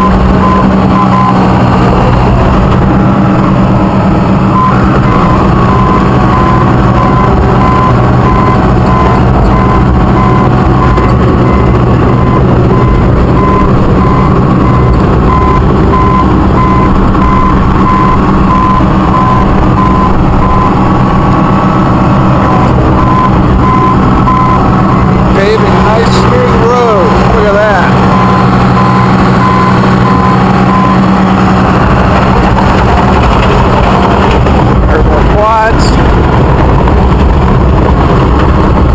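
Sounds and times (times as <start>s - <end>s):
reverse alarm beeping: 0.0s - 1.6s, 4.5s - 21.4s, 22.4s - 31.6s
high tone: 0.0s - 33.2s
bulldozer diesel engine running: 0.0s - 38.9s.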